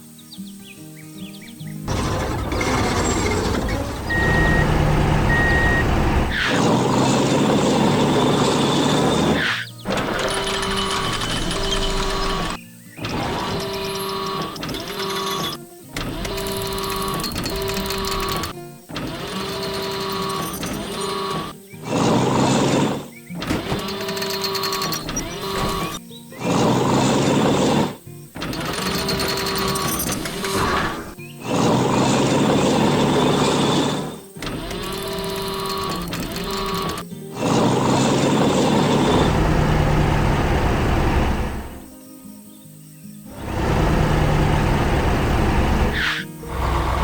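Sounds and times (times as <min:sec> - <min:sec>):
rough machine noise: 0:01.8 - 0:41.9, 0:43.3 - 0:47.0
truck engine running: 0:01.8 - 0:41.9, 0:43.3 - 0:47.0
reversing beeps: 0:04.0 - 0:06.1.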